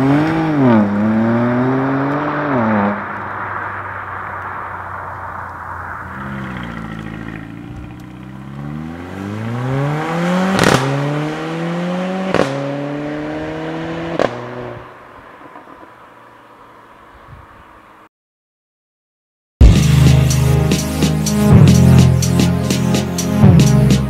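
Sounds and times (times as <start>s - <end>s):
sports car engine accelerating: 0.0s - 16.9s
gearshift crack: 2.0s - 8.6s.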